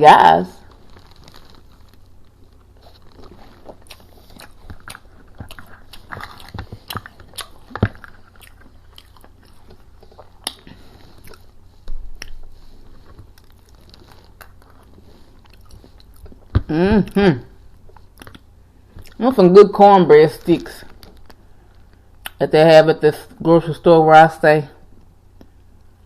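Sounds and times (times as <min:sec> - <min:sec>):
person chewing food: 0:00.6 - 0:19.2.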